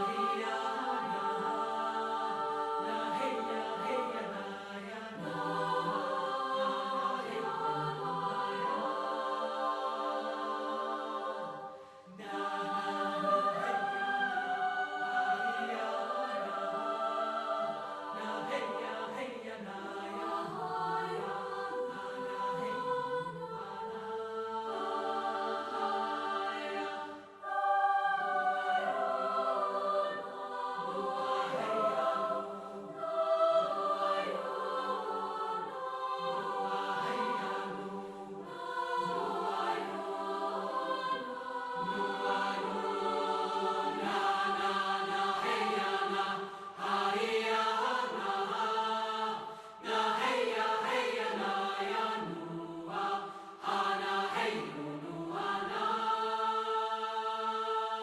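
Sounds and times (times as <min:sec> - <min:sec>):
choir chanting over held harmonies: 0:00.0 - 0:58.0.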